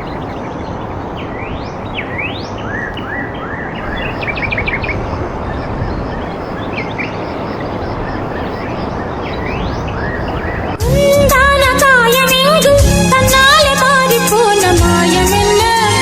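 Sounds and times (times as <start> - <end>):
small birds calling: 0.0 - 10.8
steady rushing noise: 0.0 - 12.9.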